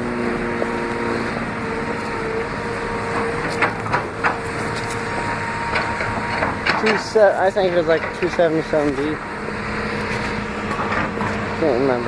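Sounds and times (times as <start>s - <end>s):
excavator engine drone: 0.0s - 12.0s
sharp knocks: 3.1s - 8.5s.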